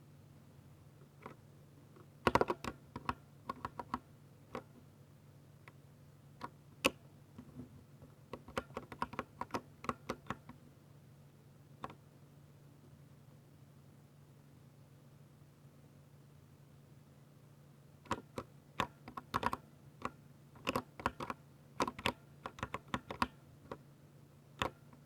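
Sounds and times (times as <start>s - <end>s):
mechanical keyboard typing: 2.2s - 4.7s, 8.4s - 10.5s, 18.1s - 23.4s.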